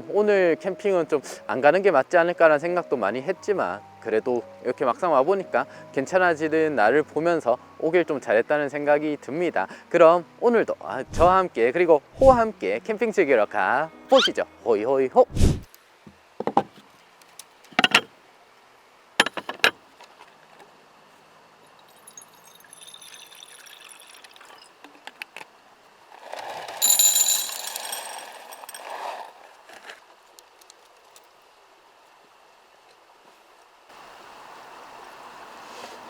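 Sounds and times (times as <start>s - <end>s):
metallic jingling and clinking: 26.8s - 29.2s.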